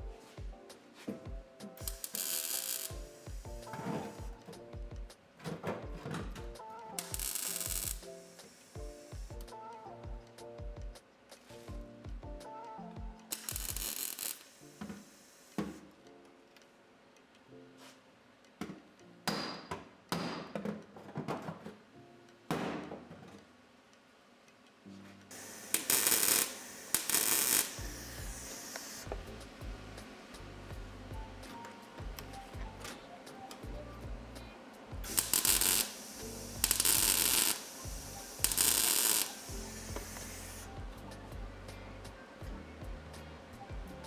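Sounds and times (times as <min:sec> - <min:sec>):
welder arc bursts: 0:01.8 - 0:04.4, 0:07.0 - 0:09.6, 0:13.2 - 0:15.8, 0:25.3 - 0:42.2.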